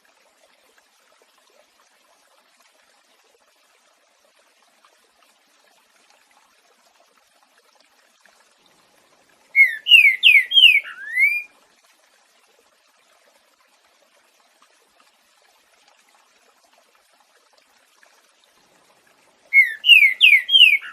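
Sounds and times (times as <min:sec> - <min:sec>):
faint water trickle: 0:00.0 - 0:20.9
bird whistling song: 0:09.5 - 0:11.5, 0:19.5 - 0:20.9.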